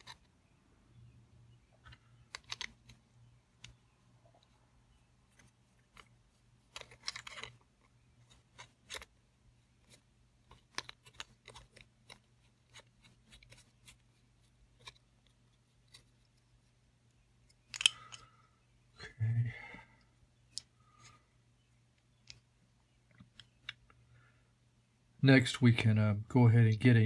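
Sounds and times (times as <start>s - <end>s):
clicks of small parts handled: 1.8s - 3.0s, 6.7s - 7.6s, 10.5s - 12.3s, 17.4s - 18.3s.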